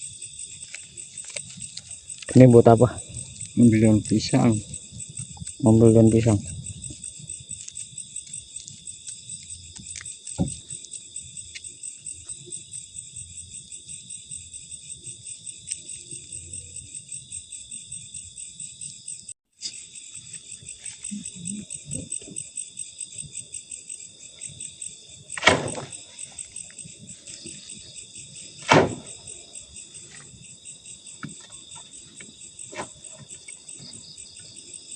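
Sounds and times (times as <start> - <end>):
crickets chirping: 0.0 - 34.9
sharp knock: 25.4 - 25.9, 28.7 - 29.1.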